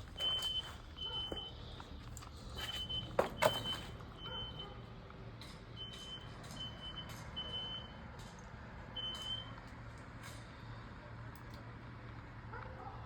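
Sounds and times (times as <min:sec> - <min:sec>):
smoke alarm beeping: 0:00.1 - 0:01.7, 0:02.5 - 0:04.8.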